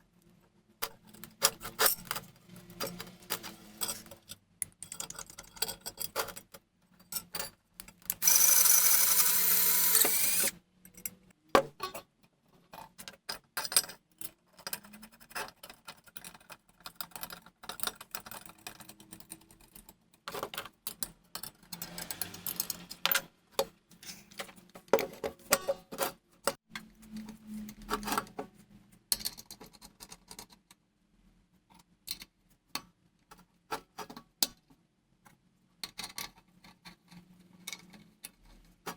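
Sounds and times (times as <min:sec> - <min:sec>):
power tool burst: 0:08.2 - 0:10.5
clicks and taps of parts: 0:31.7 - 0:33.0.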